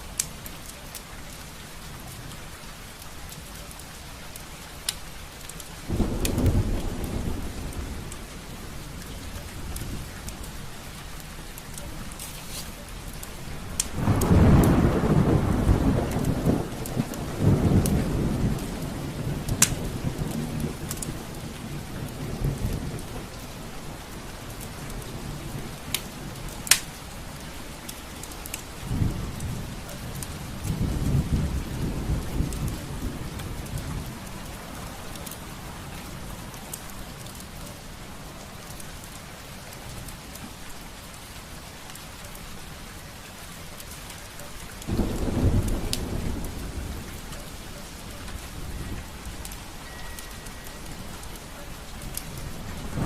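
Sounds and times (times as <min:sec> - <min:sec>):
steady rain: 0:00.0 - 0:53.0
rolling thunder: 0:05.9 - 0:10.7, 0:13.5 - 0:26.4, 0:28.7 - 0:36.5, 0:44.9 - 0:50.2, 0:51.9 - 0:53.0
wood fire popping: 0:19.6 - 0:19.8, 0:25.9 - 0:26.9.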